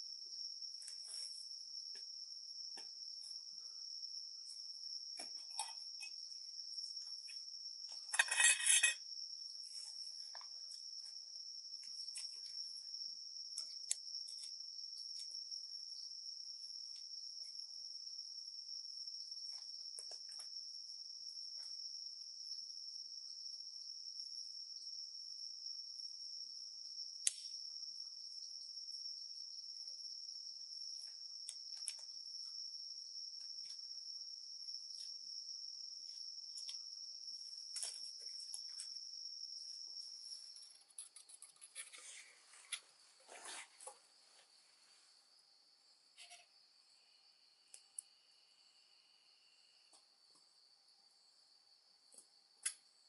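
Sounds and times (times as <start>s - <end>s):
crickets trilling: 0.0s - 53.0s.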